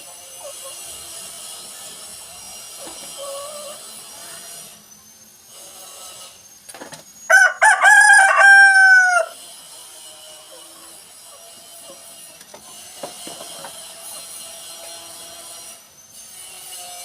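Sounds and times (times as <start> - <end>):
rooster crowing: 7.3 - 9.4.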